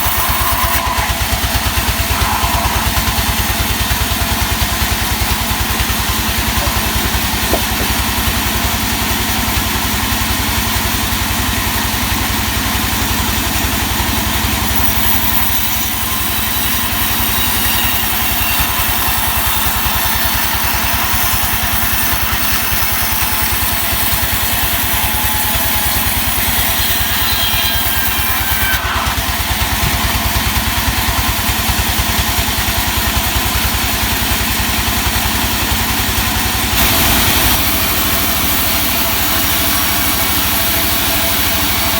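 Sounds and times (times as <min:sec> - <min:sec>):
high noisy whirr: 0:00.0 - 0:10.7, 0:11.7 - 0:31.9, 0:36.2 - 0:41.9
sawmill engine beating: 0:00.0 - 0:41.9
faint falling whine: 0:00.3 - 0:04.6.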